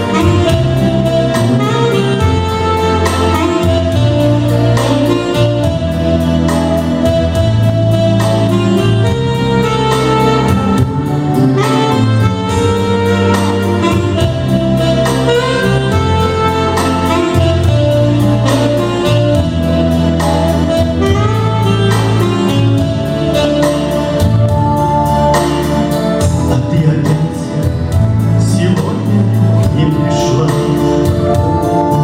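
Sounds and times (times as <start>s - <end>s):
held bass notes: 0.0s - 32.0s
melodic lead with bending notes: 0.0s - 32.0s
steady beat: 0.0s - 32.0s.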